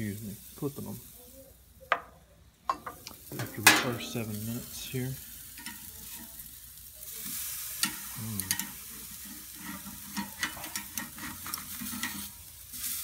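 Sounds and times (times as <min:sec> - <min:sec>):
meat sizzling on a grill: 0:00.0 - 0:13.0
utensil clicking against grill grate: 0:07.8 - 0:08.8, 0:09.5 - 0:12.3.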